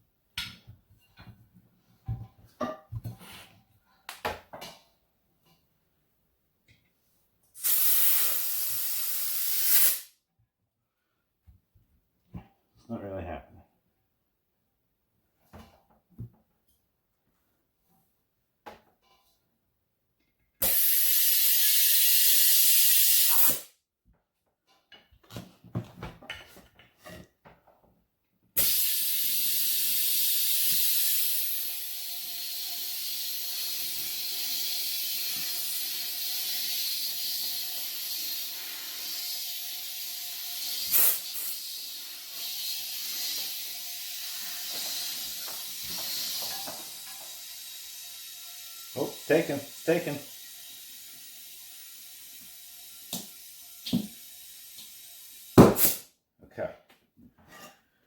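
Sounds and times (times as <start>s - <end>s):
compressed air hissing: 7.6s - 10.2s, 20.6s - 23.7s, 28.6s - 56.1s.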